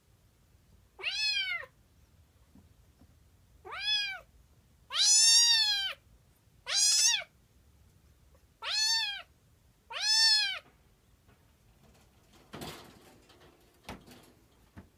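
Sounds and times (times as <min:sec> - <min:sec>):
kitten meowing: 0:01.0 - 0:01.7, 0:03.6 - 0:04.3, 0:04.9 - 0:06.0, 0:06.7 - 0:07.3, 0:08.6 - 0:09.3, 0:09.9 - 0:10.6.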